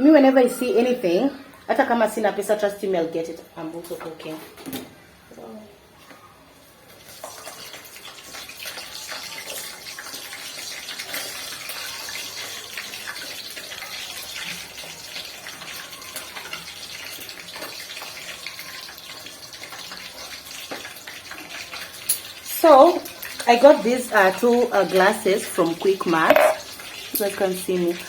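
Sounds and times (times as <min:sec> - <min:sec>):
kitchen tap running water: 0:07.1 - 0:28.0.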